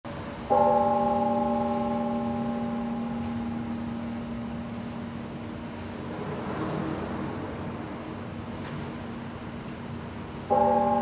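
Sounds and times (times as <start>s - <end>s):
large church bell tolling: 0.5s - 6.2s, 10.5s - 11.0s.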